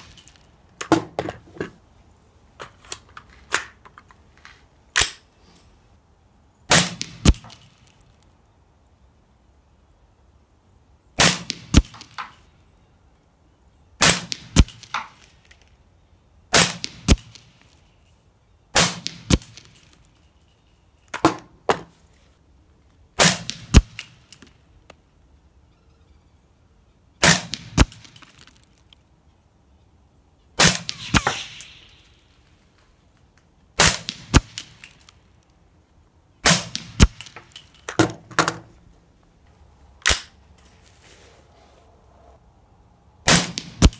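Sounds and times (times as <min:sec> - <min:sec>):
sharp cracks: 0:04.9 - 0:05.4, 0:06.7 - 0:08.3, 0:11.2 - 0:12.5, 0:23.2 - 0:25.0, 0:27.2 - 0:29.0, 0:30.6 - 0:32.5, 0:33.8 - 0:35.6, 0:36.4 - 0:38.4, 0:40.0 - 0:40.4, 0:43.2 - 0:43.9
suppressed gunshots: 0:06.7 - 0:07.6, 0:11.2 - 0:12.3, 0:16.5 - 0:17.4, 0:23.2 - 0:24.0, 0:27.2 - 0:28.0, 0:30.6 - 0:31.9, 0:36.4 - 0:37.4, 0:43.3 - 0:43.9.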